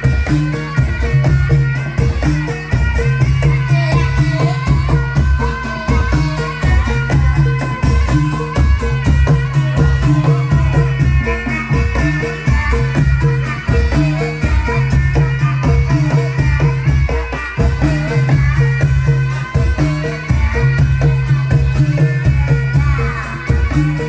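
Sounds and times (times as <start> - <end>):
shaken rattle percussion: 0.0 - 24.0
traditional music with percussion: 0.0 - 24.0.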